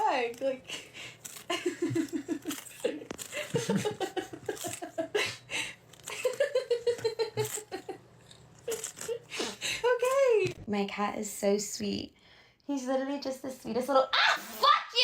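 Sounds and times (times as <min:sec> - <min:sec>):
person laughing: 0:01.5 - 0:08.0.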